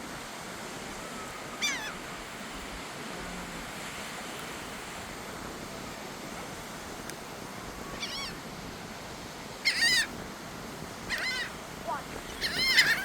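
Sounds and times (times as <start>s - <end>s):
surf washing: 0.0s - 13.0s
wind: 0.0s - 13.0s
seagull call: 1.2s - 2.0s, 7.9s - 8.4s, 9.6s - 10.1s, 11.0s - 11.6s, 12.3s - 13.0s.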